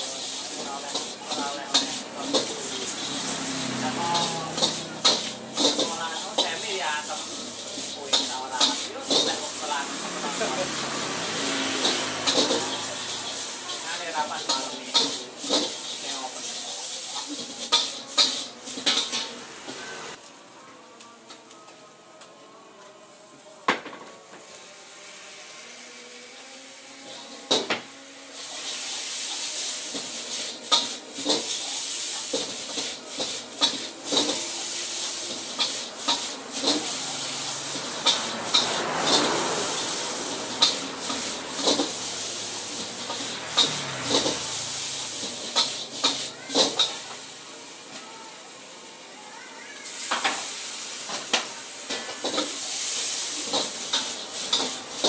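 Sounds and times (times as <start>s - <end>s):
noodles sizzling in a pan: 0.0s - 20.3s, 23.0s - 55.0s
metal utensil scraping a pan: 10.8s - 16.1s, 17.0s - 20.1s.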